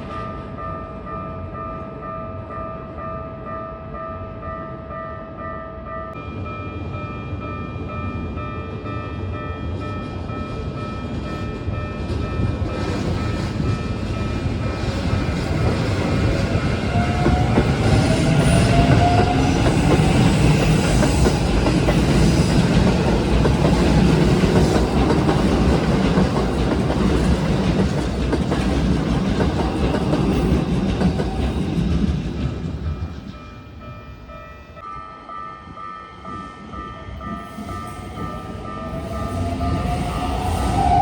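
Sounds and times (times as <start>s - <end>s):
crossing warning bell ringing: 0.0s - 41.0s
train wheels clattering over rails: 11.1s - 33.4s.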